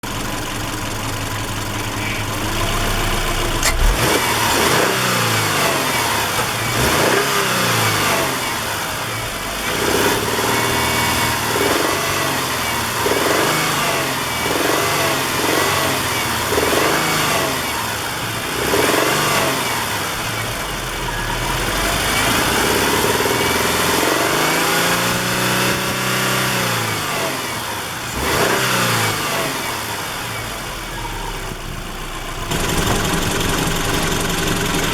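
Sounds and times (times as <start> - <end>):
engine knocking: 0.0 - 25.4, 29.6 - 34.9
car engine idling and revving: 0.0 - 34.9.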